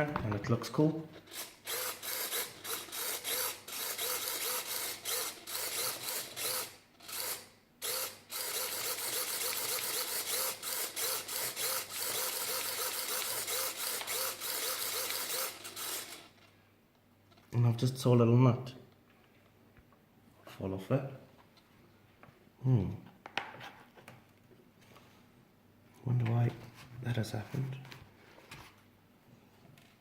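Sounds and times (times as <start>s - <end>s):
servo motors whirring: 1.3s - 16.3s.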